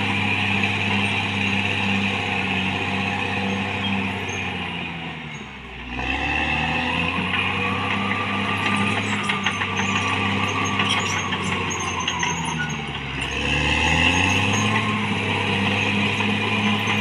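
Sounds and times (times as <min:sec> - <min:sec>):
bulldozer diesel engine running: 0:00.0 - 0:17.0
clanks and rattles: 0:07.2 - 0:15.1.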